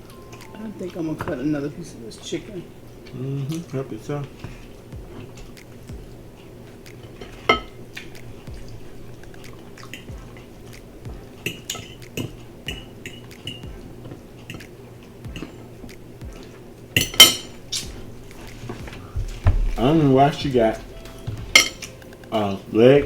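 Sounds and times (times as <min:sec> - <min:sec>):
cutlery clinking on a plate: 0:06.8 - 0:10.8, 0:11.4 - 0:19.0, 0:20.3 - 0:22.6.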